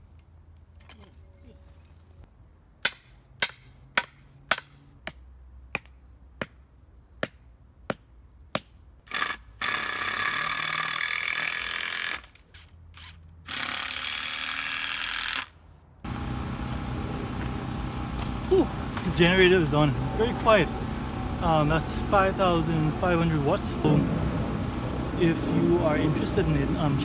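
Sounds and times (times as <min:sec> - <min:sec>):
generator engine cranking: 0:16.1 - 0:27.0.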